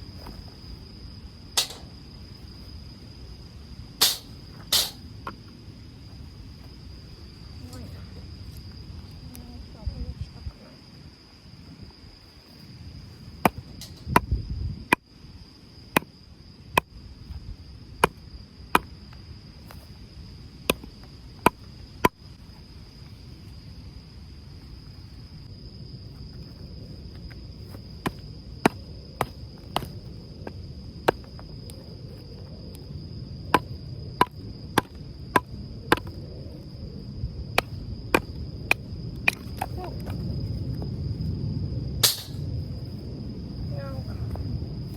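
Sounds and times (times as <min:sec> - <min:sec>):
crickets trilling: 0:00.0 - 0:44.9
wind rumble: 0:00.0 - 0:44.9
sharp knocks: 0:01.6 - 0:01.9, 0:04.0 - 0:05.0.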